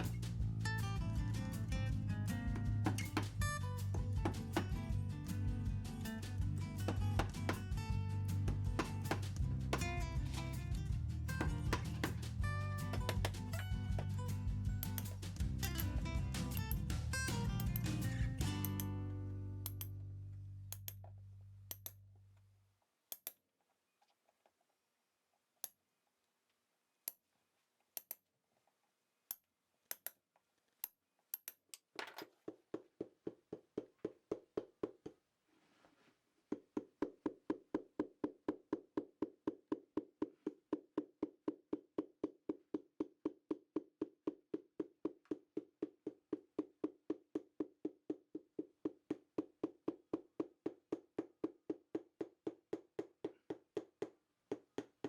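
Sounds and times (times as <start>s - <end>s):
hammer tapping on boot sole: 2.4s - 18.9s, 32.2s - 35.3s, 36.5s - 55.0s.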